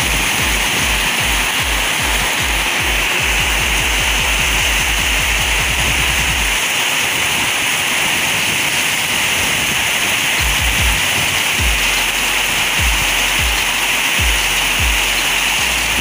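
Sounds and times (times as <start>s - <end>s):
background music: 0.0s - 6.6s, 10.4s - 16.0s
deep thudding beat: 0.0s - 6.6s, 10.4s - 16.0s
steady hiss: 0.0s - 16.0s.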